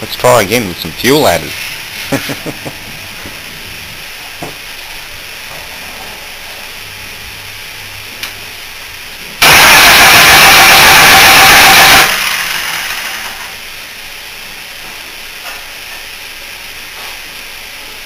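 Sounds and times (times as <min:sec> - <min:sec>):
engine starting loudly: 0:09.4 - 0:13.6.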